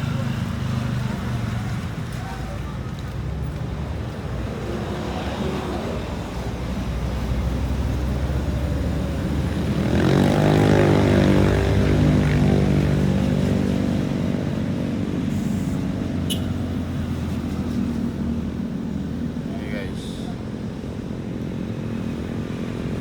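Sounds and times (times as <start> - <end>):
road traffic rumble: 0.0 - 23.0.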